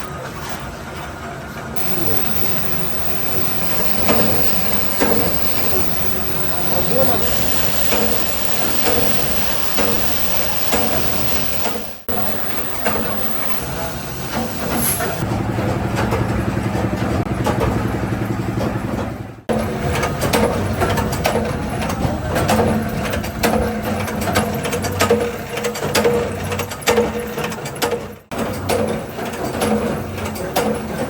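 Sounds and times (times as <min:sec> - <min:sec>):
machine motor hum and rattle: 0:01.8 - 0:19.4.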